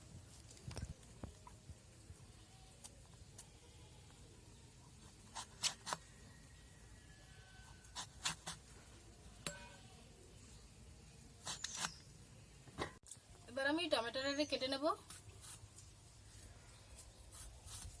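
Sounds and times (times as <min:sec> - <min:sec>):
blade slicing eggplant: 0:05.2 - 0:06.1, 0:07.9 - 0:08.7, 0:11.4 - 0:12.1.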